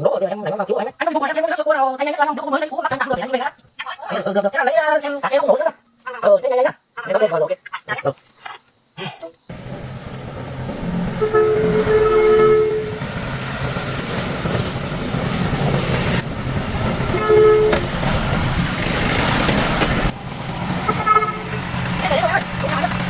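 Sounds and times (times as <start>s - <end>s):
vehicle engine running: 9.5s - 23.0s
vehicle horn: 11.0s - 13.2s, 17.0s - 18.3s, 20.8s - 21.8s.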